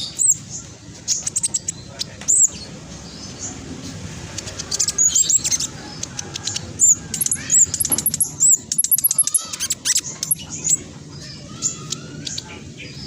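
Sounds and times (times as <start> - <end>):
bird singing high chattering notes: 0.0 - 3.7, 4.3 - 13.0.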